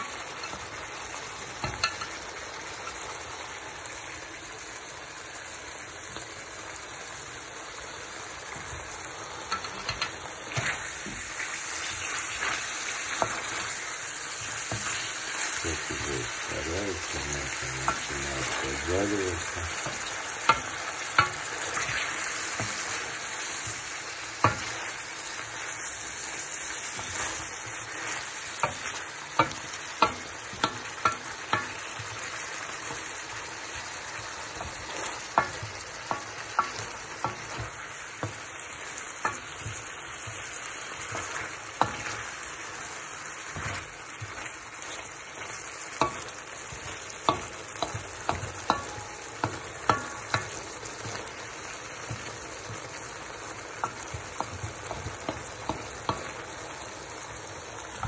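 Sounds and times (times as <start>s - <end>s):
meat sizzling in a frying pan: 0.0s - 58.0s
utensil scraping a pan: 9.5s - 16.4s.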